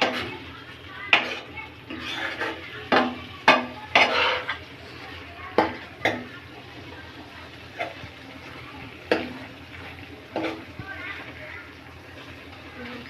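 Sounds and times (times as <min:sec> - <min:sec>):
chicken sizzling in pan: 0:00.0 - 0:13.0
spoon knocking against pan: 0:02.4 - 0:04.6, 0:05.6 - 0:06.3, 0:09.1 - 0:09.4.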